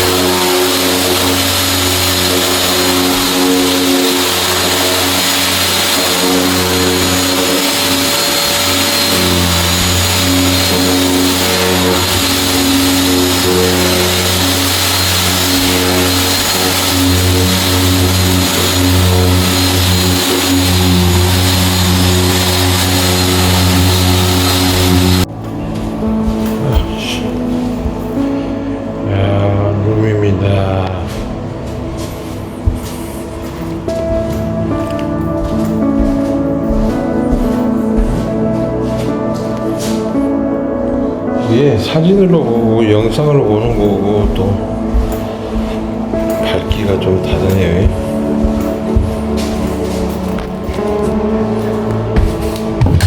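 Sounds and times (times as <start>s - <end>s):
abrasive hissing on wood: 0.0s - 25.3s
floor sanding machine drone: 0.0s - 53.0s.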